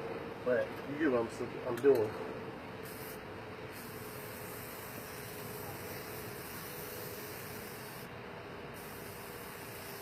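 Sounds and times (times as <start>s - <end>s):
spray-paint can hissing: 2.8s - 8.1s, 8.8s - 10.0s.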